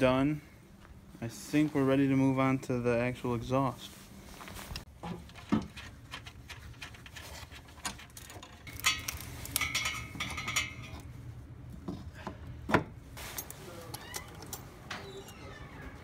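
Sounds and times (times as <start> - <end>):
metal tools clinking: 5.8 - 11.1, 13.2 - 15.6
metallic ring: 8.8 - 11.0.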